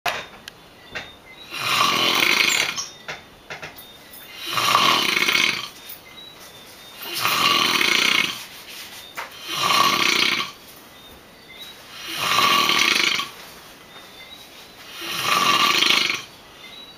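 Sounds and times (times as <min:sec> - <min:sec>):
person snoring loudly: 0:01.5 - 0:02.8, 0:04.4 - 0:05.8, 0:07.0 - 0:08.4, 0:09.4 - 0:10.6, 0:11.9 - 0:13.4, 0:14.9 - 0:16.3.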